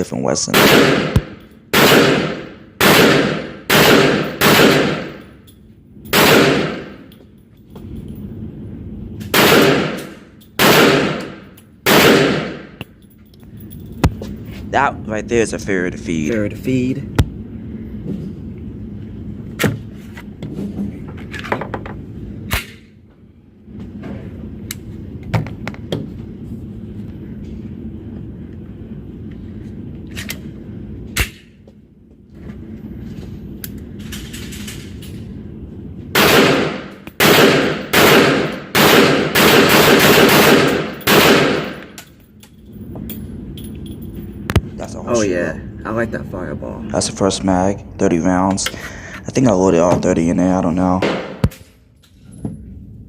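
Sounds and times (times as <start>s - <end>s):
pistol gunshots with echo: 0.5s - 5.2s, 6.1s - 7.0s, 9.3s - 12.8s, 36.2s - 41.8s.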